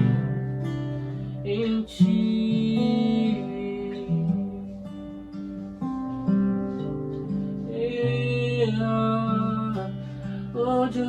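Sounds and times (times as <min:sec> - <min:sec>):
acoustic guitar chords: 0:00.0 - 0:11.0
person singing: 0:01.4 - 0:04.9, 0:07.6 - 0:11.0.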